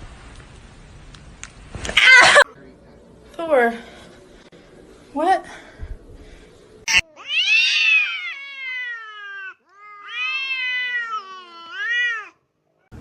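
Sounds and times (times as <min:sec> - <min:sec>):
cat meowing: 0:06.9 - 0:12.4.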